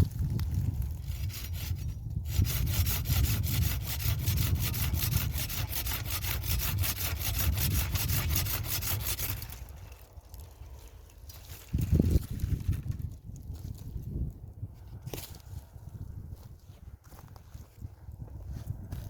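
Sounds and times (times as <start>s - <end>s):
hand saw cutting wood: 1.0s - 10.1s.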